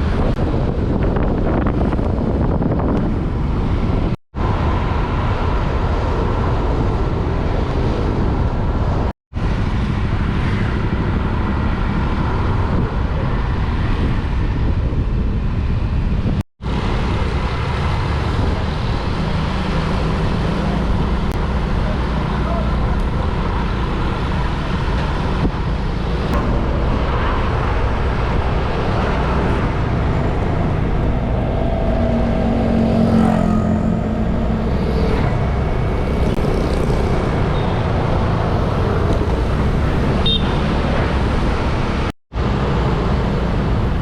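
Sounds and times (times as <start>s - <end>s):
wind buffeting microphone: 0.0s - 21.7s, 22.8s - 44.0s
road traffic rushing: 0.0s - 44.0s.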